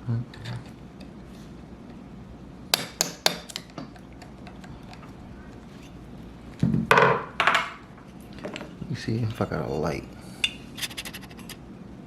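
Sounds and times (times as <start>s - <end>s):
small hammer tapping on metal: 2.8s - 3.8s.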